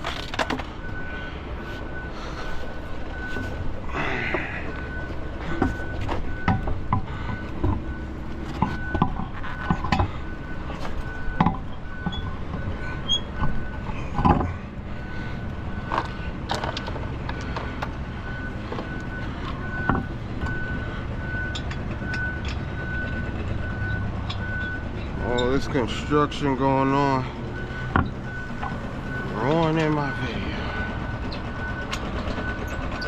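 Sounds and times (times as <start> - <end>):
construction machinery engine rumble: 0.0 - 33.0
reversing alarm beeping: 0.6 - 33.0
sharp knocks and clanks: 4.3 - 14.7, 18.6 - 20.7.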